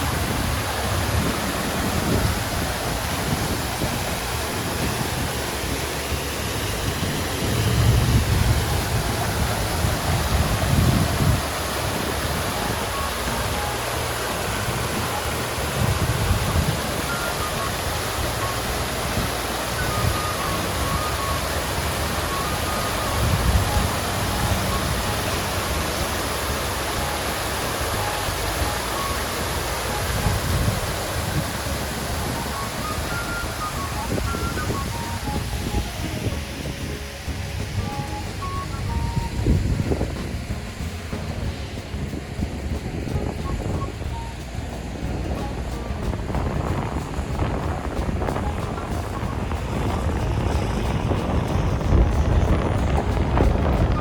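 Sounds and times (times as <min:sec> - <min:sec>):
water fountain splashing: 0:00.0 - 0:54.0
low rumble: 0:33.5 - 0:54.0.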